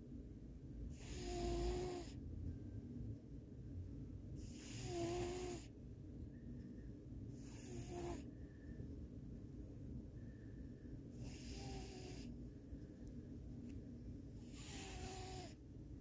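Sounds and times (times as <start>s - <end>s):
cat snoring: 0.9s - 2.2s, 4.4s - 5.7s, 7.4s - 8.3s, 11.2s - 12.3s, 14.4s - 15.6s.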